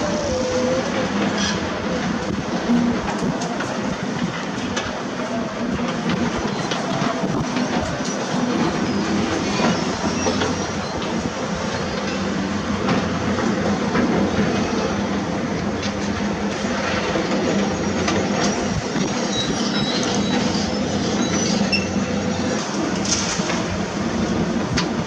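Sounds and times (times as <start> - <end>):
diesel engine drone: 0.0 - 11.7.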